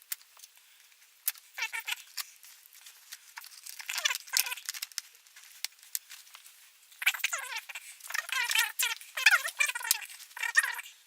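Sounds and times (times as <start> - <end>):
small animal chirping: 1.6 - 2.4, 3.4 - 4.8, 7.0 - 11.0.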